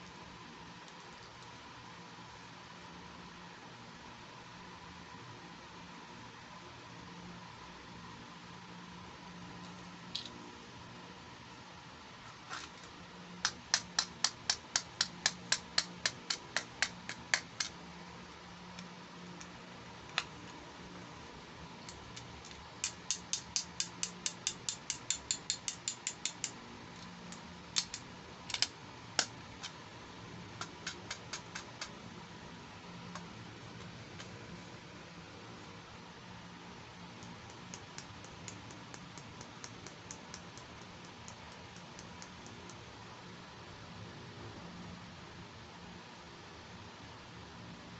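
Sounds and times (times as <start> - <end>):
steady background hiss: 0.0 - 47.9
rapid sharp clicks: 30.6 - 32.0, 37.1 - 42.9.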